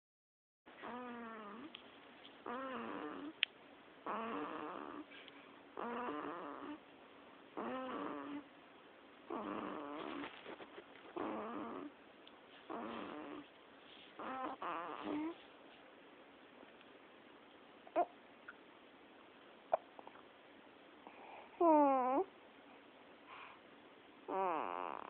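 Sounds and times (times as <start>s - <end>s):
rhythmic snoring: 0.8s - 1.7s, 2.4s - 3.4s, 4.0s - 5.1s, 5.8s - 6.8s, 7.6s - 8.5s, 9.3s - 10.3s, 11.1s - 12.0s, 12.7s - 13.5s, 14.2s - 15.4s, 24.3s - 25.0s
quiet breathing: 4.8s - 5.8s, 9.3s - 16.0s, 20.9s - 24.0s.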